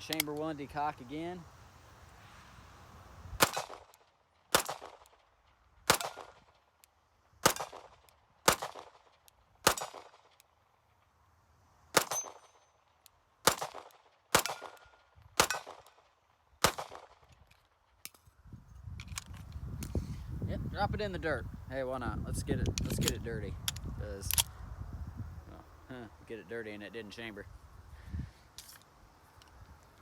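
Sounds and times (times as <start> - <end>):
pistol shots: 3.4 - 5.2, 5.9 - 6.5, 7.4 - 10.4, 11.9 - 12.6, 13.4 - 16.0, 16.6 - 17.3.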